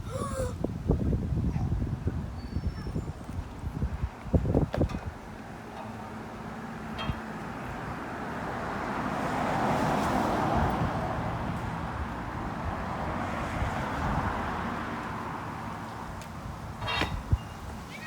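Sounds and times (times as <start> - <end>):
vehicles passing: 3.0 - 18.0.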